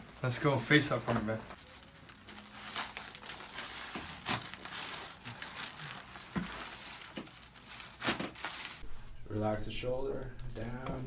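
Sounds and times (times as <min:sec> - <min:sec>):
rustling and crinkling: 0:00.0 - 0:08.8.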